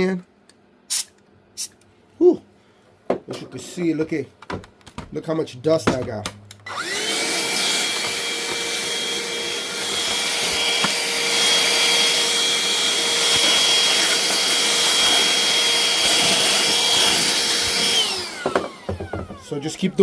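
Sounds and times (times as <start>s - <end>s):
compressed air hissing: 0.9s - 1.8s.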